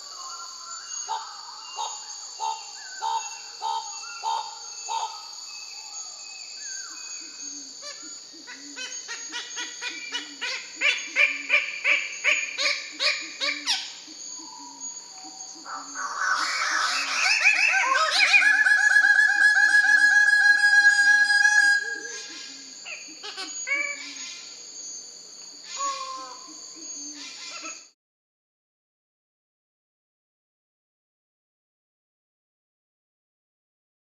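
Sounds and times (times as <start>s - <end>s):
insects droning: 0.0s - 28.0s
bird calling: 6.7s - 24.5s, 25.6s - 27.9s.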